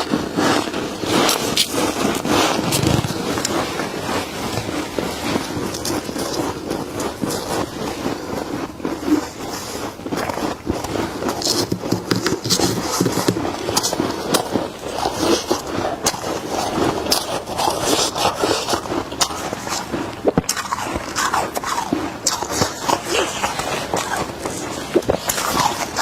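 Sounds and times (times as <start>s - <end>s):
crunching frost while chewing: 0.0s - 26.0s
frost being scraped: 0.0s - 26.0s.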